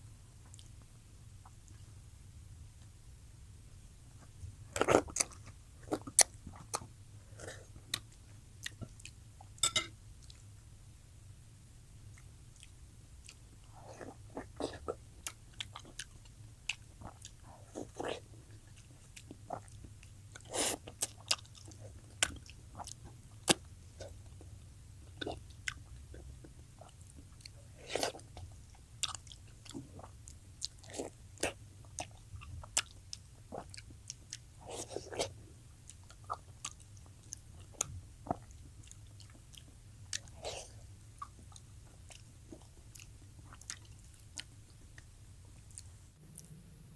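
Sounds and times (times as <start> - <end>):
person chewing food: 0.4 - 0.8, 4.2 - 10.5, 12.1 - 46.0
low hum: 46.0 - 46.9.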